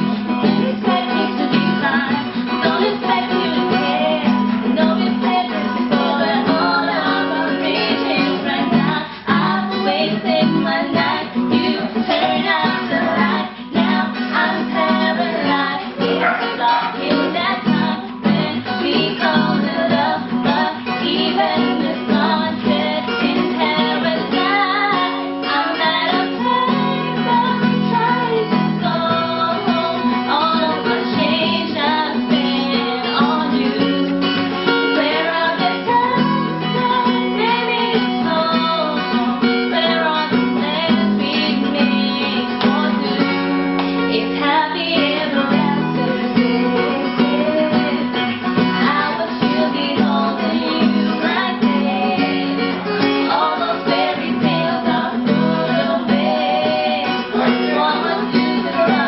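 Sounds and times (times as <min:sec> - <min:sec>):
acoustic guitar strumming: 0:00.0 - 0:59.0
person singing: 0:00.0 - 0:59.0.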